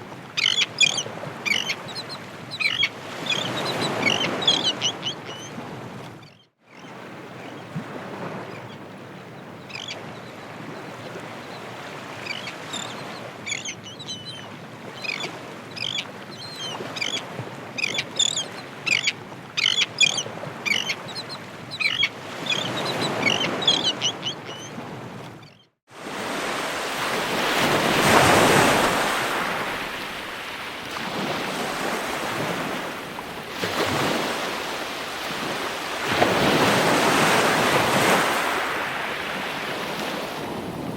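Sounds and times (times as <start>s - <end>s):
ocean surf washing: 0.0s - 6.2s, 6.9s - 40.9s
birds calling: 0.3s - 5.6s, 9.6s - 24.8s.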